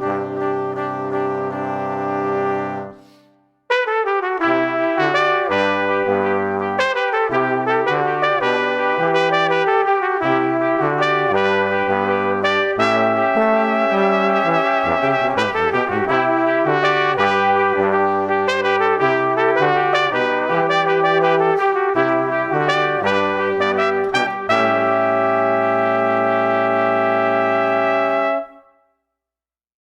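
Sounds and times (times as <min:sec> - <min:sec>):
brass band playing: 0:00.0 - 0:28.7.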